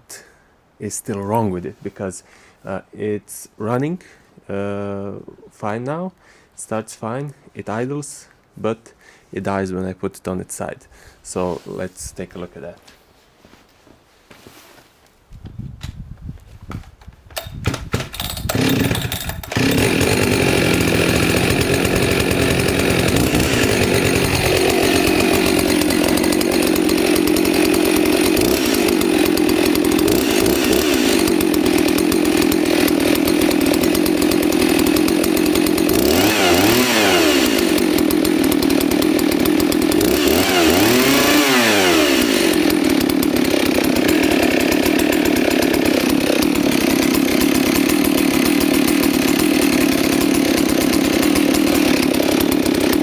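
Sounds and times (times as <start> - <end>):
chainsaw pull-started and revving: 17.4 - 53.0.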